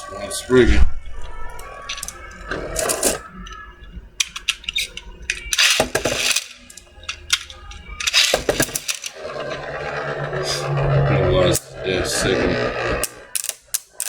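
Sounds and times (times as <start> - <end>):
spinning tops clashing: 4.2 - 9.6.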